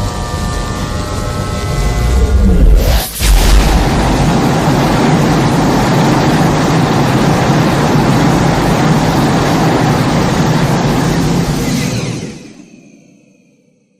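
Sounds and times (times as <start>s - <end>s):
loud rushing rumble: 1.6s - 7.7s.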